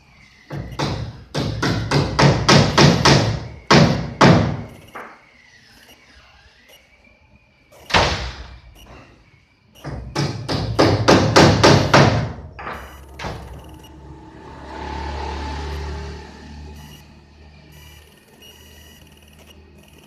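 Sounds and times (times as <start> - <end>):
steady hum: 0.0 - 20.0
knocks: 0.5 - 5.2, 9.8 - 13.8.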